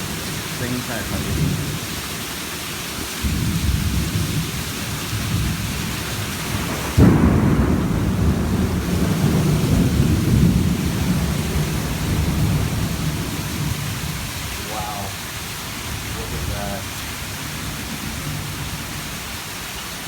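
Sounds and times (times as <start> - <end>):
low thunder rumbling: 0.0 - 2.3, 3.0 - 19.5
heavy rain pouring: 0.0 - 20.0
loud thunder crack: 5.1 - 19.2.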